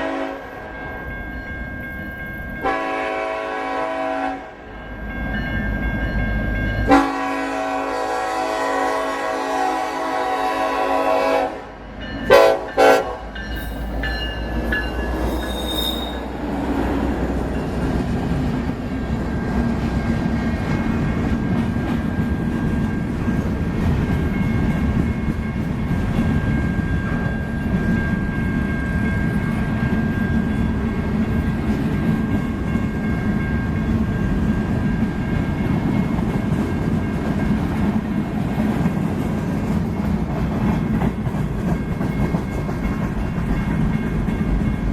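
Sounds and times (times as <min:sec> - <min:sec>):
locomotive horn chord: 0:00.0 - 0:00.6, 0:02.6 - 0:04.6, 0:06.9 - 0:13.4
train cars rumbling past: 0:00.0 - 0:44.9
faint steady squeal: 0:15.2 - 0:16.4.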